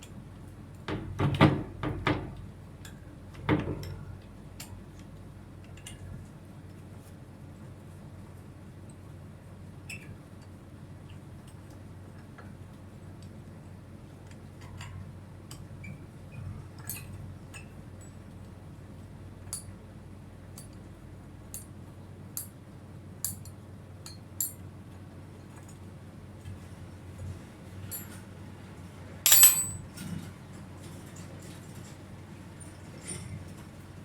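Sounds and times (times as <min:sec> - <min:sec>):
ringing metallic clank: 0:29.3 - 0:29.8
small metal pieces clinking: 0:29.3 - 0:29.8.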